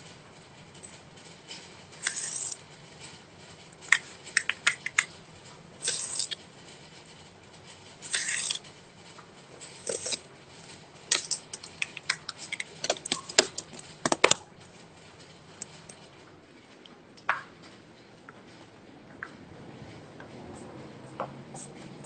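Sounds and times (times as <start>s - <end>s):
clicks scratches and rustles of handling: 0.6s - 14.5s.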